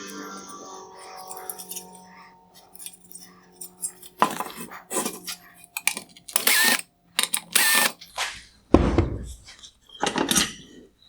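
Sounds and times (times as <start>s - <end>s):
clicks and clinks of small parts: 0.0s - 8.0s
powered screwdriver whirring: 5.8s - 8.0s.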